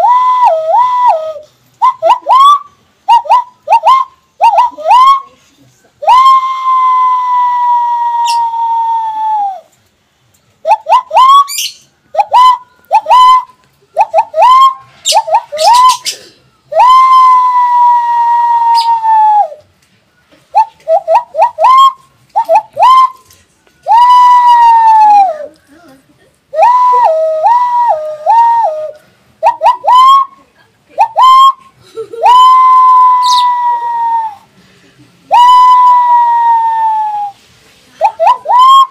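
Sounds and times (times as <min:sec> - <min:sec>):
hand whistle imitating sirens: 0:00.0 - 0:05.3, 0:06.1 - 0:09.6, 0:16.7 - 0:19.5, 0:20.6 - 0:25.3, 0:26.6 - 0:30.3, 0:31.1 - 0:34.4, 0:35.3 - 0:37.4, 0:38.0 - 0:38.9.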